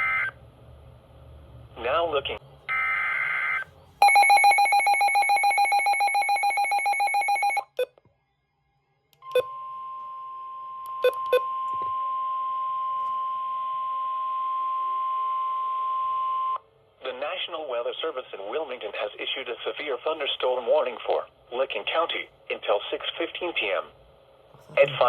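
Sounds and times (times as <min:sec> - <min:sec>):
electronic alarm beeping rapidly: 0:02.7 - 0:07.8
steady warning alarm tone: 0:02.7 - 0:07.8.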